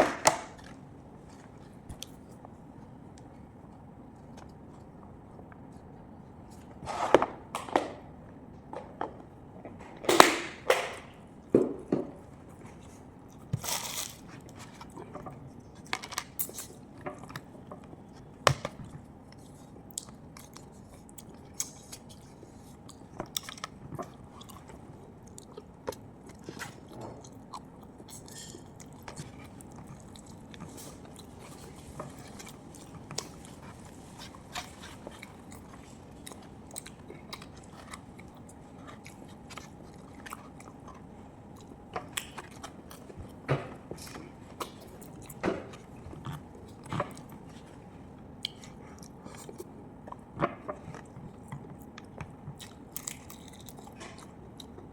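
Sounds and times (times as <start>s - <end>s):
person chewing crunchy food: 12.2s - 54.9s.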